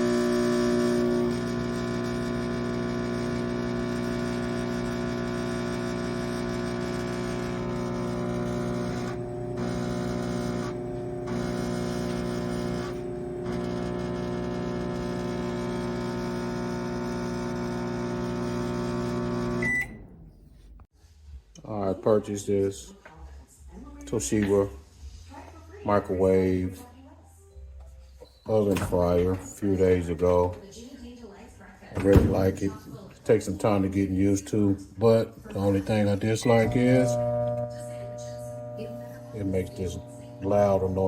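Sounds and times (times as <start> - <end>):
microwave oven electrical hum: 0.0 - 20.2, 36.4 - 41.0.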